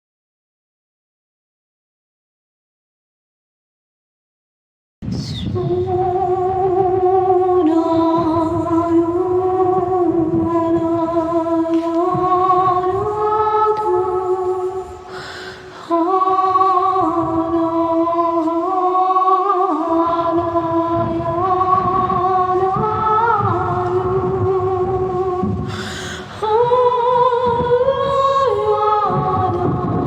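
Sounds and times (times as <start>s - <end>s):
wordless singing voice: 5.1s - 30.0s
person breathing in: 14.9s - 15.9s, 25.6s - 26.4s.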